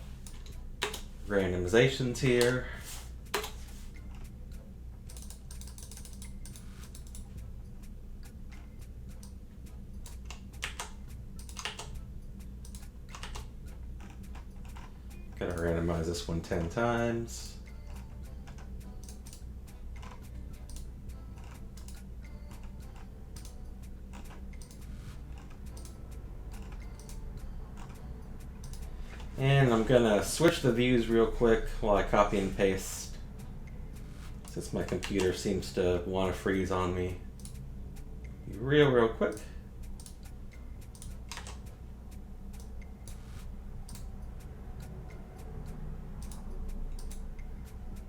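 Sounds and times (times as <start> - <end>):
computer mouse and keyboard clicking: 0.0 - 1.1, 1.8 - 4.4, 5.0 - 7.4, 10.0 - 12.0, 12.6 - 31.2, 34.0 - 36.7, 37.4 - 37.6, 39.2 - 41.8, 42.5 - 48.0
low steady hum: 0.0 - 48.0.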